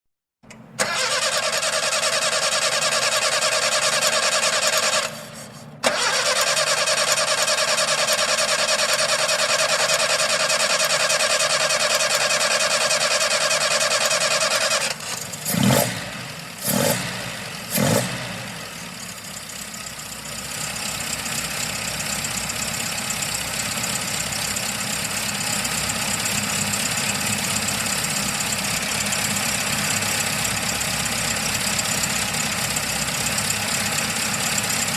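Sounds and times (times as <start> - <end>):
car starter cranking: 0.5 - 15.9
engine coughing and idling: 0.5 - 34.9.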